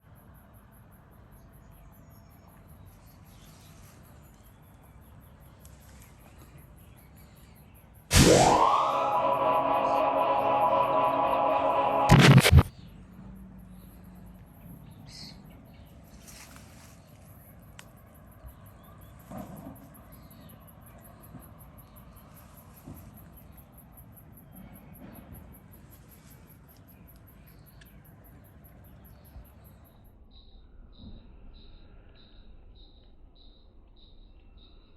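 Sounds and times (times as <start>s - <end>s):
electronic tone sweeping up: 8.1s - 12.7s
music: 8.2s - 12.7s
crickets chirping: 12.7s - 34.9s
insect chirping: 25.5s - 34.9s.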